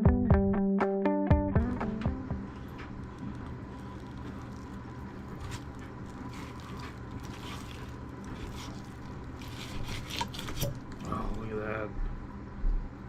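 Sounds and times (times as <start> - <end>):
steady low hum: 1.6 - 13.0
knife scraping fish: 3.6 - 10.9.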